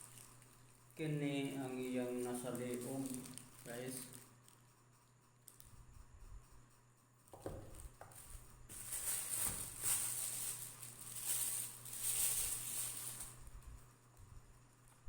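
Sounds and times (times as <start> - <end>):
plastic packaging crinkling: 0.0 - 4.6, 7.4 - 13.8.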